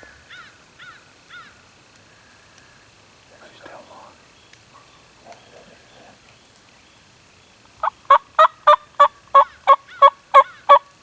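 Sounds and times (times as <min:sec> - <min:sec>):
turkey yelps: 0:07.8 - 0:10.9.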